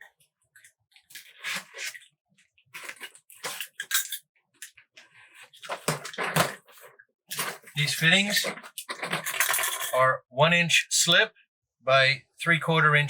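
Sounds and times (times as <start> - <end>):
plastic pipe fittings clattering: 5.6 - 10.0.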